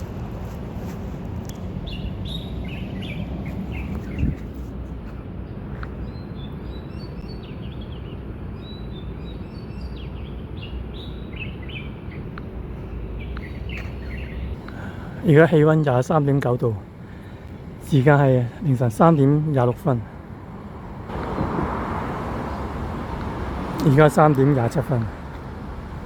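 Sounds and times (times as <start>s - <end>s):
birds chirping: 1.5s - 4.7s, 5.4s - 26.0s
steady low rumble: 20.1s - 26.0s.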